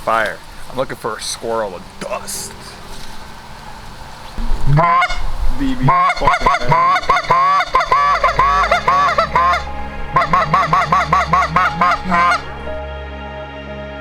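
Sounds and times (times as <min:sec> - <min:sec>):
soft background music: 0:00.0 - 0:14.0
goose honks: 0:04.4 - 0:12.8.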